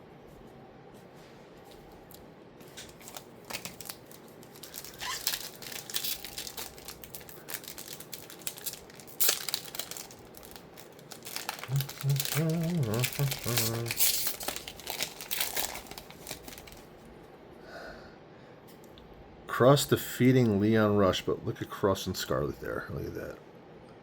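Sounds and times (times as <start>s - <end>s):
card packaging crinkling: 2.6s - 17.1s.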